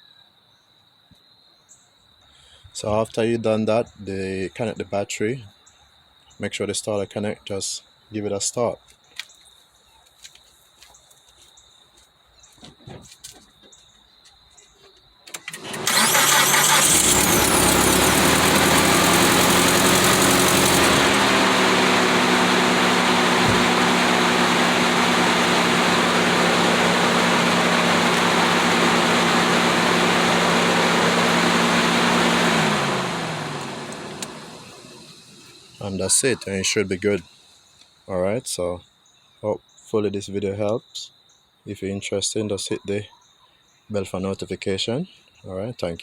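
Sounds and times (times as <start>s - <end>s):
car engine starting and idling: 15.3s - 37.2s.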